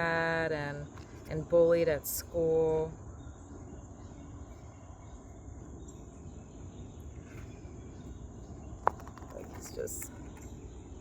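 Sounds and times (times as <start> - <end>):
crickets trilling: 0.0 - 11.0.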